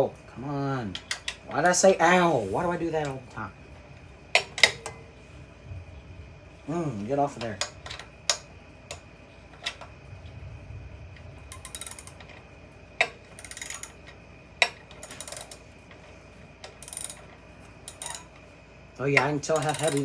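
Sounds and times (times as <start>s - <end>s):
socket ratchet clicking: 11.5s - 12.2s, 13.0s - 15.6s, 16.7s - 17.3s, 17.9s - 18.3s, 19.5s - 20.0s
metal clinks: 16.8s - 18.4s, 19.5s - 20.0s.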